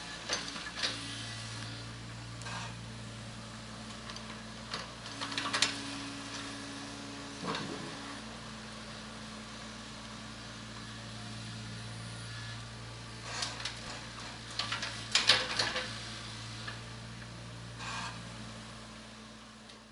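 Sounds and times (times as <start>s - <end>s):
excavator diesel engine humming: 0.0s - 19.9s
clanking and scraping: 7.4s - 8.2s.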